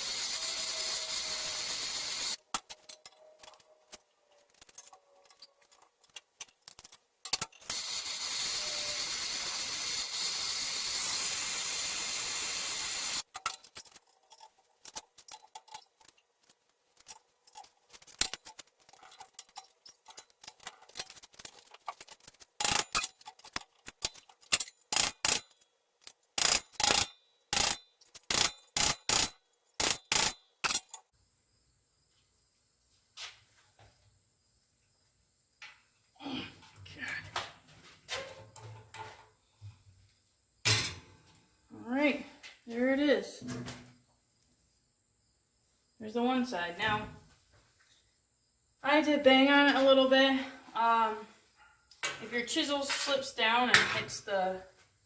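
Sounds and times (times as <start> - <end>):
steady hiss: 7.8 - 13.2.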